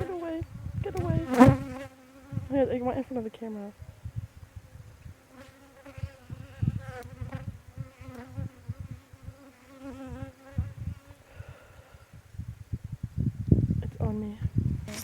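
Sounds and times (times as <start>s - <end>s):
honeybees buzzing: 0.0s - 12.0s.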